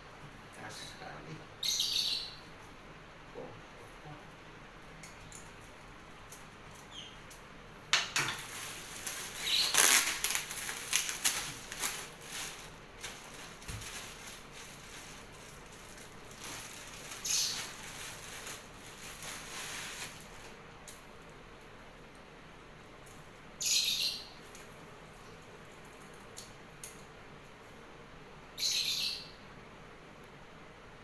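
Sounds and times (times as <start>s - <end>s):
rustling and crinkling: 8.0s - 20.6s.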